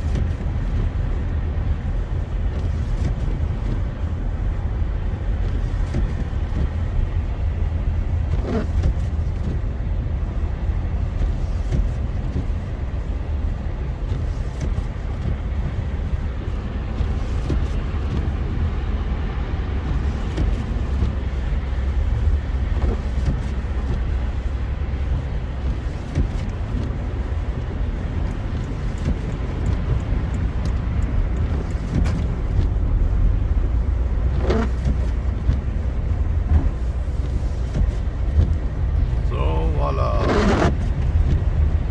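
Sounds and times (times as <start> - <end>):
car road noise rumble: 0.0 - 41.9.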